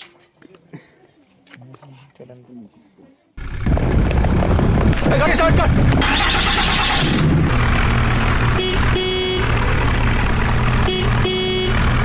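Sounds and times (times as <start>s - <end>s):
diesel engine running: 3.4s - 12.0s
vehicle horn honking: 8.4s - 9.9s, 10.7s - 12.0s.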